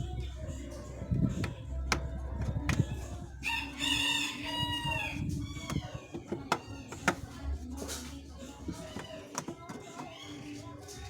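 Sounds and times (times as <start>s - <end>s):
rooster crowing: 3.4s - 5.8s.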